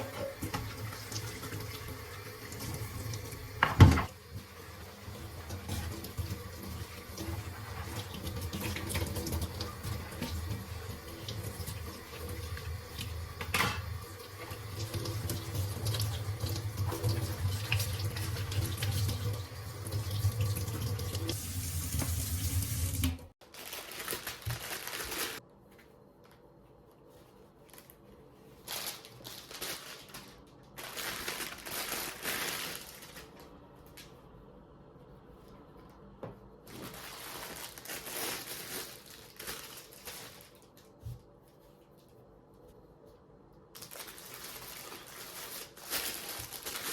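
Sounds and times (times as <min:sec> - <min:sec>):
water running steadily: 0:00.0 - 0:23.4
rustling and handling noises: 0:23.4 - 0:46.9.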